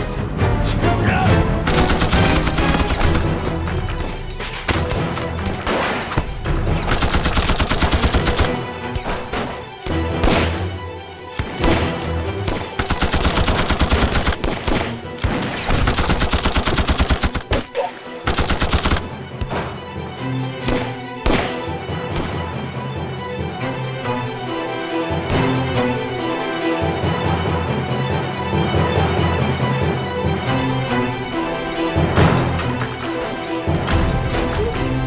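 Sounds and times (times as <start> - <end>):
dramatic background music: 0.0 - 35.0
rifle shots: 1.7 - 3.6, 4.5 - 10.8, 11.4 - 19.6, 20.6 - 22.4
machine-gun fire: 1.7 - 3.7, 4.6 - 10.7, 11.4 - 19.2.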